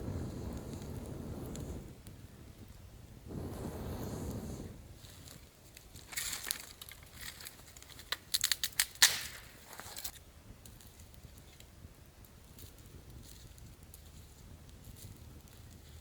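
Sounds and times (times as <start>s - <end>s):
sharp cracks of twigs: 5.7s - 11.7s
twigs crunching and snapping: 5.7s - 11.7s.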